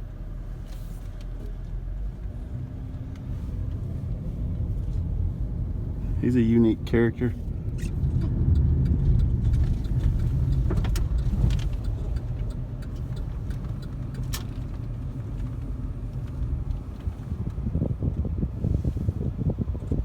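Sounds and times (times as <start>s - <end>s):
car engine and road noise: 0.0s - 20.0s
wind buffeting microphone: 16.3s - 20.0s.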